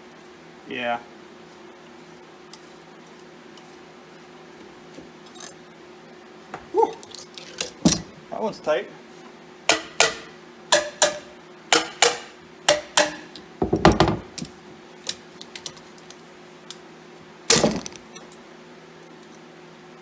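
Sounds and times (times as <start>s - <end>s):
loose metal parts rattling: 5.2s - 5.6s, 6.9s - 8.7s, 9.7s - 16.2s
metal clank: 7.0s - 8.2s, 9.7s - 15.8s, 17.5s - 18.4s
metal-on-metal strikes ringing: 9.7s - 13.5s.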